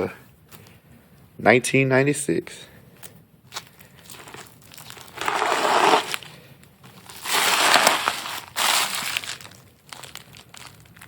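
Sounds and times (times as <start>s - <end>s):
packing material crumpling: 3.5s - 11.0s.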